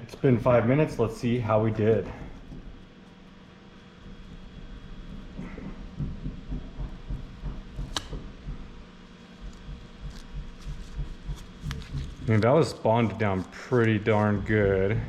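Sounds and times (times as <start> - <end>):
sharp plastic crack: 7.9 - 8.2.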